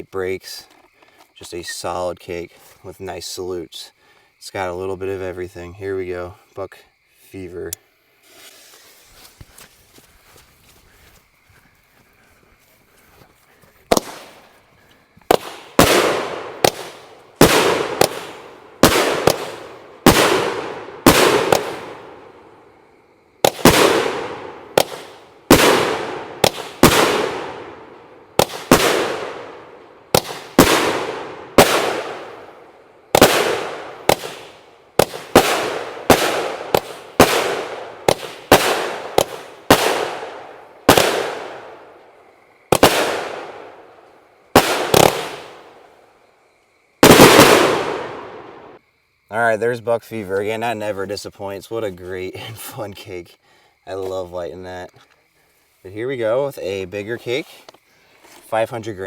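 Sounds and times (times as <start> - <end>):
fireworks bangs echoing: 13.9 - 14.5, 15.2 - 22.7, 23.4 - 45.9, 47.0 - 48.8.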